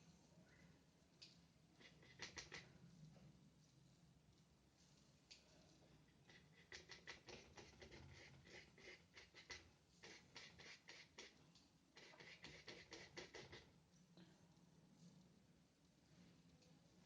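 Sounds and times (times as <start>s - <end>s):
paintbrush dabbing on paper: 1.8s - 2.7s, 6.1s - 11.4s, 12.0s - 13.7s.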